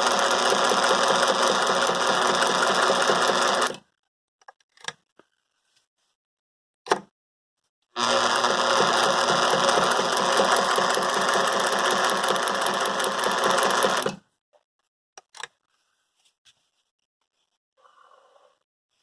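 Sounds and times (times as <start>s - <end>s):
sewing machine stitching: 0.0s - 3.8s, 8.0s - 14.2s.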